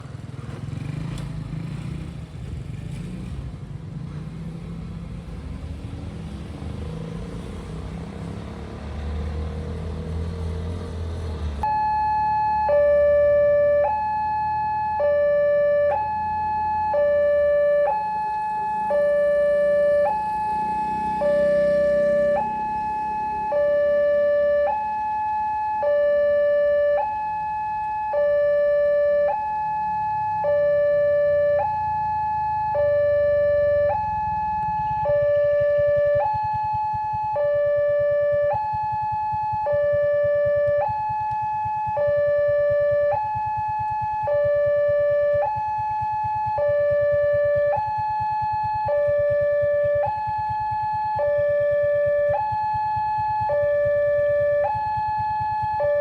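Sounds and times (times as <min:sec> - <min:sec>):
two-tone level crossing alarm: 0:11.6 - 0:56.0.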